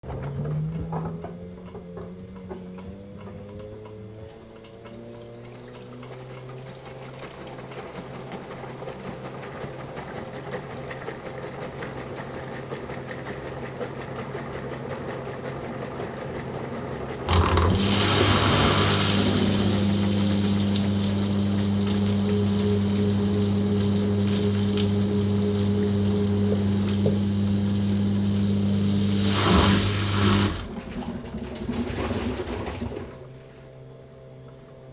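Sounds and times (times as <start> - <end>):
washing machine motor hum: 0.0 - 34.9
rush of water: 17.3 - 30.8.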